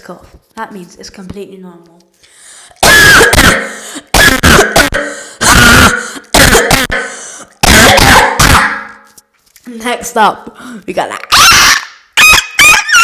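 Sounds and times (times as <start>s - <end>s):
person coughing loudly: 2.8s - 9.0s.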